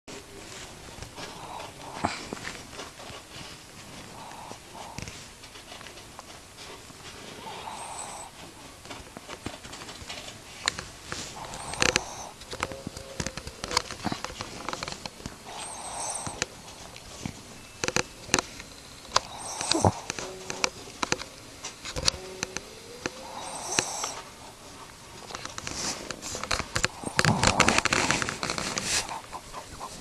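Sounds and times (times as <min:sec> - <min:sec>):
dog snoring: 0:00.1 - 0:05.2, 0:06.6 - 0:08.8, 0:11.2 - 0:30.0
dog snuffling: 0:00.1 - 0:30.0
sharp clicks: 0:10.6 - 0:17.2.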